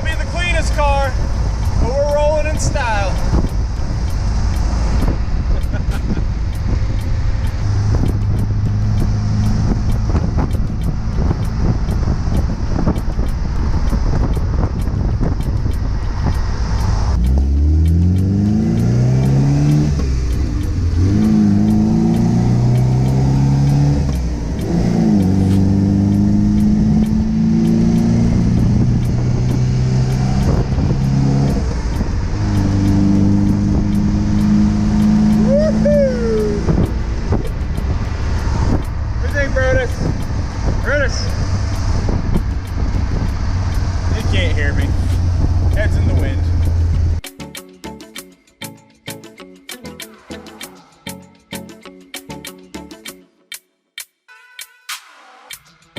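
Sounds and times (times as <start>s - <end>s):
car engine accelerating: 0.0s - 47.2s
wind noise: 0.0s - 47.2s.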